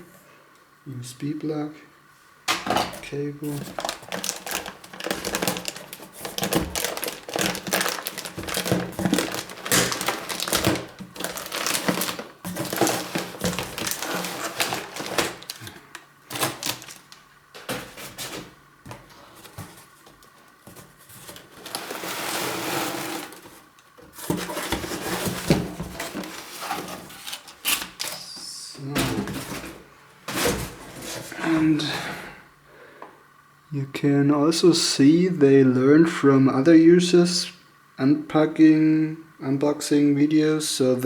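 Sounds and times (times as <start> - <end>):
packaging rustle: 3.4 - 31.4
packaging clicks and taps: 3.6 - 21.5.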